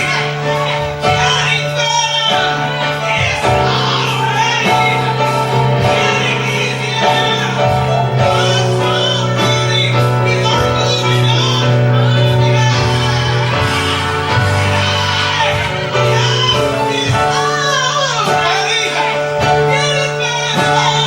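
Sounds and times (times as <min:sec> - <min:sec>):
choir singing: 0:00.0 - 0:21.0
low bass note: 0:03.6 - 0:17.4.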